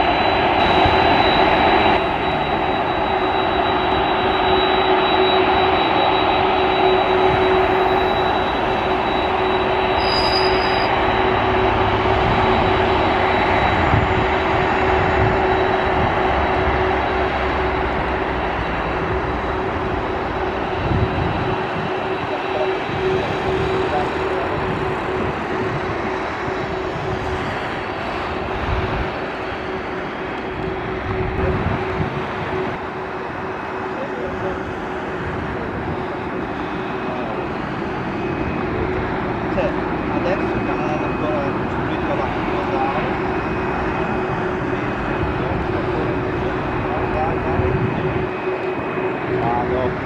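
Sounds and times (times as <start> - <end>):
jet engines running: 0.0 - 50.0
brief high tone: 6.8 - 11.3.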